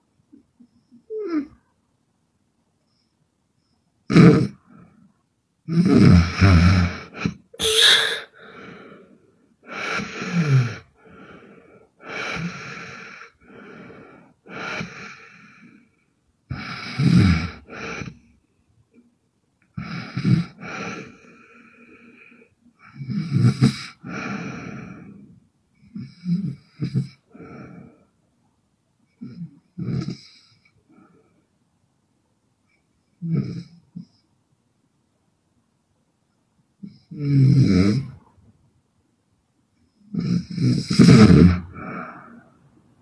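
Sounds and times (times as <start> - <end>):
woman snoring: 5.7 - 9.1.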